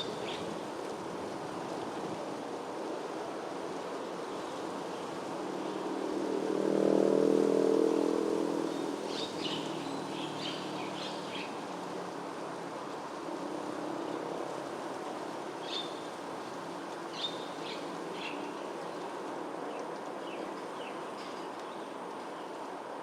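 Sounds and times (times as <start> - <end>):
vehicle passing: 6.0 - 11.2.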